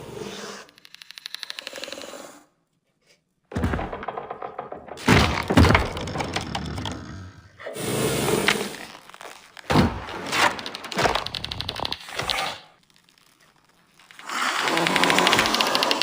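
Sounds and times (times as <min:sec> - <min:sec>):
rapid clicks: 0:00.6 - 0:02.3, 0:08.4 - 0:16.0
dense cracking and clicking: 0:03.5 - 0:07.6, 0:08.4 - 0:16.0.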